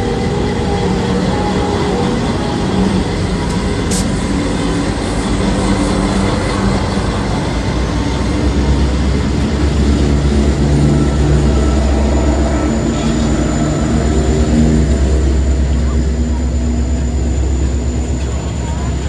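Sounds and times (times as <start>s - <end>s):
diesel locomotive engine drone: 0.0s - 19.0s
freight train running: 0.0s - 19.0s.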